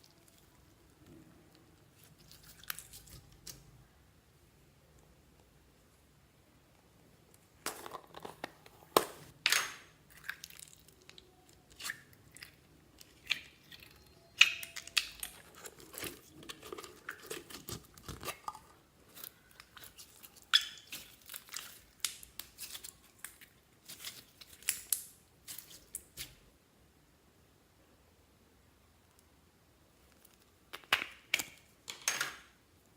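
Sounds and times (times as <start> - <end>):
slime squelching and popping: 1.8 - 3.6, 10.1 - 26.4.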